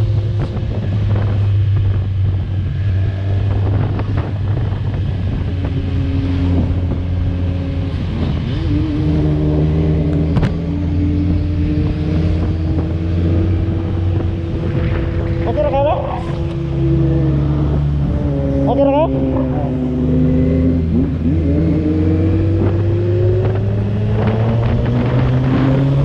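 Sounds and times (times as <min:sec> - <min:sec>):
motorcycle engine cruising: 0:00.0 - 0:26.0.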